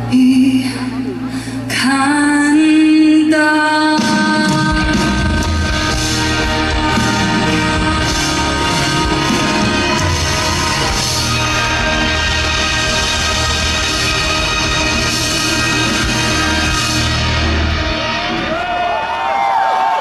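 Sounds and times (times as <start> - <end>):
pop-rock band playing: 3.3 - 20.0.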